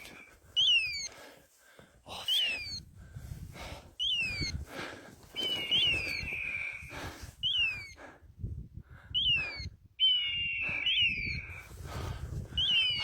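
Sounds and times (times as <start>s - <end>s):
high whistled chirps: 0.0s - 1.1s, 4.0s - 4.6s, 5.4s - 8.0s, 9.2s - 11.7s, 12.6s - 13.0s
long steady whistle tones: 5.3s - 8.0s, 9.1s - 11.7s.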